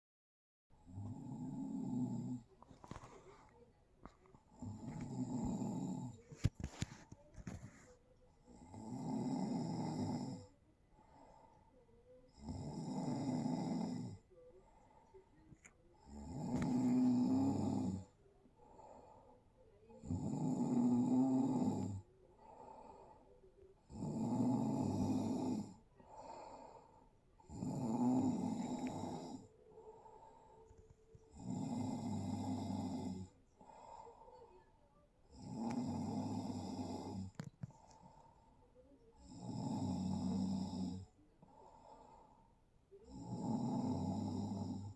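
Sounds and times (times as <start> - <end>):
quiet breathing: 0.8 - 44.9
loud snoring: 0.9 - 3.1, 4.5 - 6.8, 8.4 - 10.6, 12.3 - 14.3, 16.0 - 19.2, 20.0 - 23.1, 23.8 - 34.3, 35.3 - 38.2, 39.2 - 42.3, 43.0 - 44.9.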